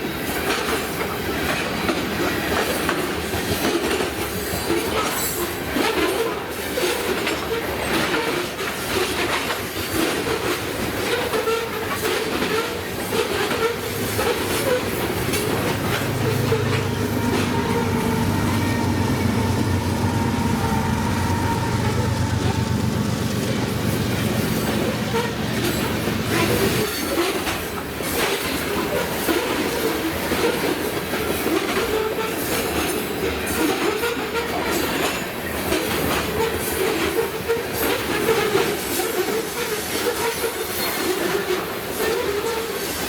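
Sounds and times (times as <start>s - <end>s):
train cars clattering over rail joints: 0.0s - 43.0s
wheel squeal: 4.4s - 27.6s
locomotive engine drone: 12.4s - 26.8s.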